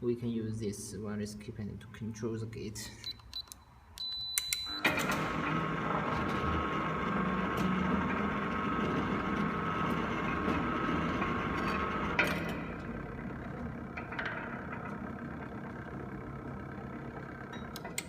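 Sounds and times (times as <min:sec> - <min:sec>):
keypad beep: 0:03.1 - 0:05.0
gate motor running with gear whine: 0:04.6 - 0:18.0.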